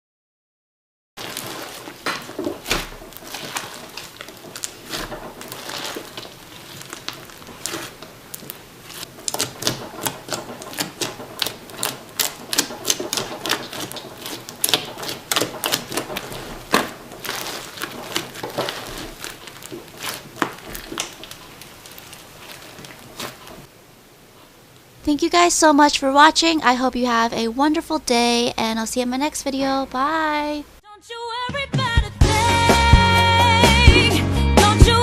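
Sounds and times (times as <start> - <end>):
slime with foam balls crackling: 1.2 - 23.8.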